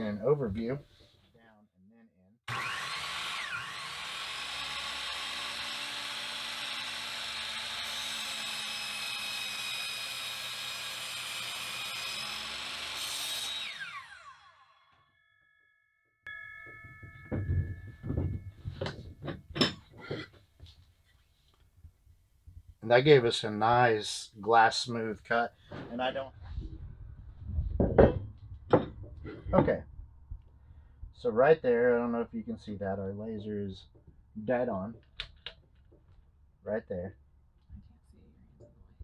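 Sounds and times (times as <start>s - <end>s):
miter saw motor whining: 2.5s - 15.1s
knocks and clatters: 16.6s - 20.5s, 27.6s - 29.8s.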